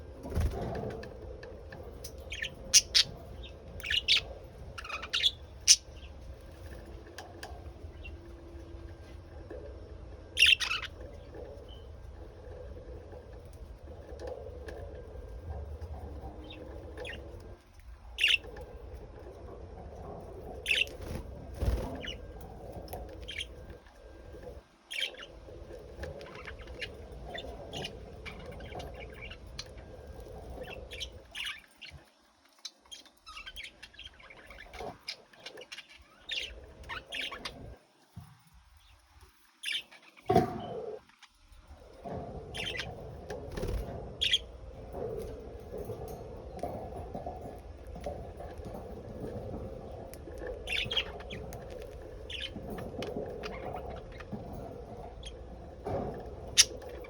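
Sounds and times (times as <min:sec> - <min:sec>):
low steady hum: 0:00.0 - 0:39.6
birds chirping: 0:00.0 - 0:57.0.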